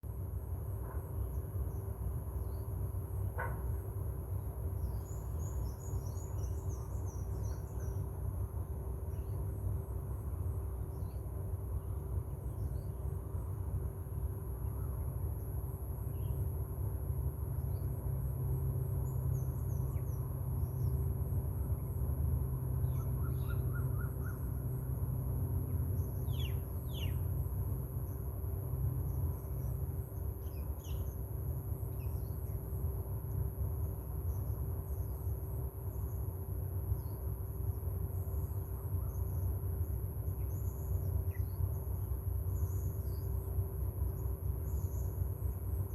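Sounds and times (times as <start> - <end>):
steady low rumble: 0.0 - 45.9
birds chirping: 26.0 - 27.2.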